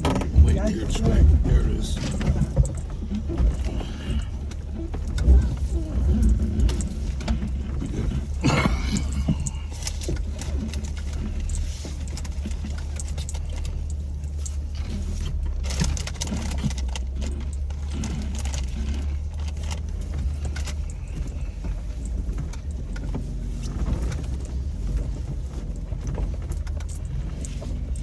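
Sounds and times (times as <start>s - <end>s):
low engine drone: 0.0s - 28.0s
vehicle rattles and clunks: 0.0s - 28.0s.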